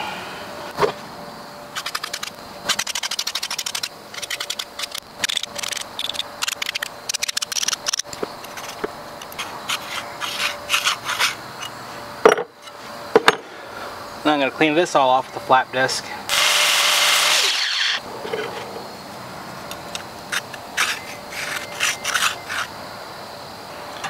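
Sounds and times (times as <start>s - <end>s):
rasping strokes on metal: 9.4s - 11.4s.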